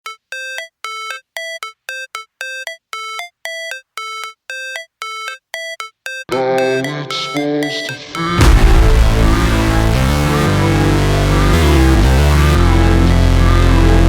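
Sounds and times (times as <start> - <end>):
electronic track with heavy bass: 6.2 - 14.0.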